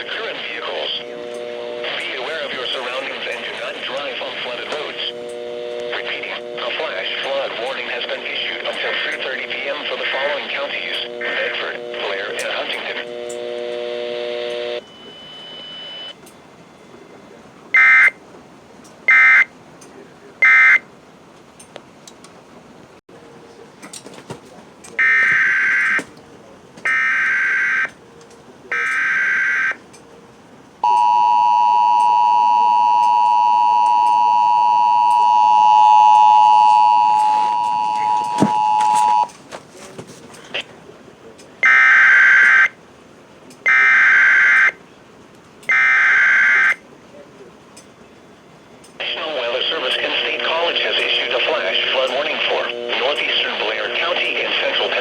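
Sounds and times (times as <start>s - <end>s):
two-tone attention signal: 4.5s - 17.2s, 30.8s - 39.3s.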